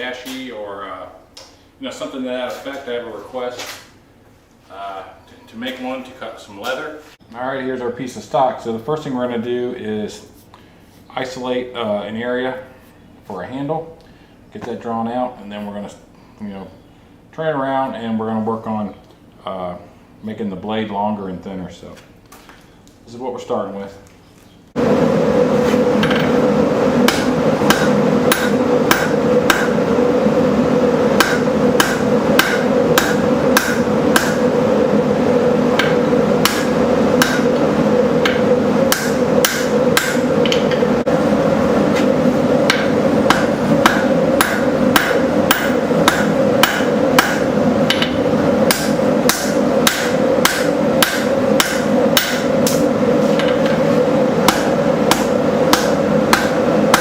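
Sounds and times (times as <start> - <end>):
steady hum: 24.6 - 57.0
hammer striking steel on anvil: 27.1 - 29.8, 31.2 - 34.4, 35.8 - 37.6, 38.2 - 40.9, 42.7 - 53.8, 54.4 - 57.0.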